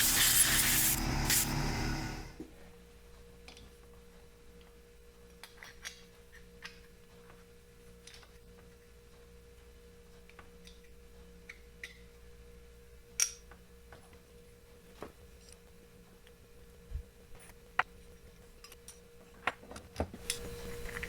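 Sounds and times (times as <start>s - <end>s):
low electrical hum: 0.0s - 2.4s, 20.2s - 21.0s.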